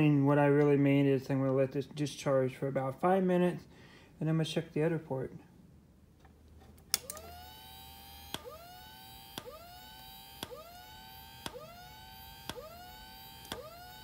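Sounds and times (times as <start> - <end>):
strobe flash click: 7.0 - 14.0.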